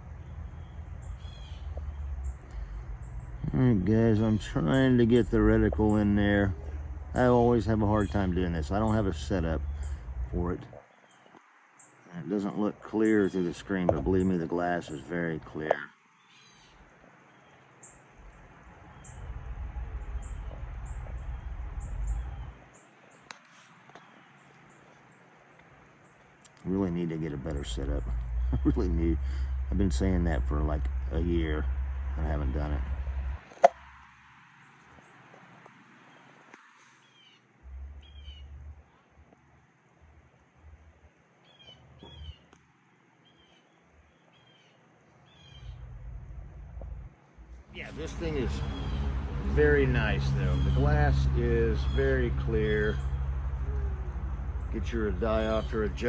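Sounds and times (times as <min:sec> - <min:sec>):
small bird chirping: 0:00.0 - 0:10.1, 0:15.8 - 0:26.6, 0:38.0 - 0:39.0, 0:41.4 - 0:42.6, 0:43.2 - 0:45.9, 0:47.8 - 0:56.0
low rumble: 0:00.0 - 0:10.7, 0:18.2 - 0:22.6, 0:27.4 - 0:33.4, 0:45.6 - 0:56.0.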